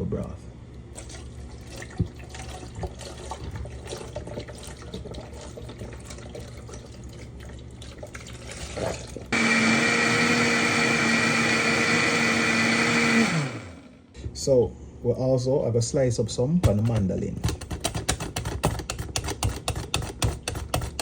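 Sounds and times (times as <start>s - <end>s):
electric blender running: 9.3s - 14.1s.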